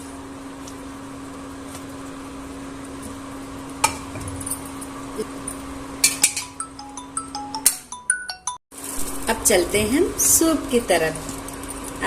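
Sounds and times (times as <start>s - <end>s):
utensils clinking against a pot: 3.8s - 6.6s.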